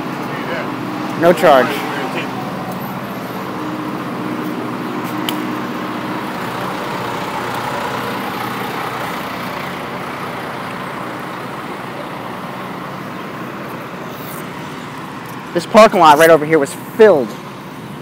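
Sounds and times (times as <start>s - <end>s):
heavy vehicle passing: 0.0s - 18.0s
traffic engine hum: 0.0s - 18.0s.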